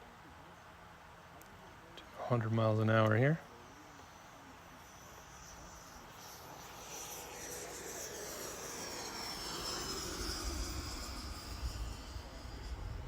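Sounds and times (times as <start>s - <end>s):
model airplane motor whine: 3.5s - 13.0s
low rumble: 5.7s - 13.0s.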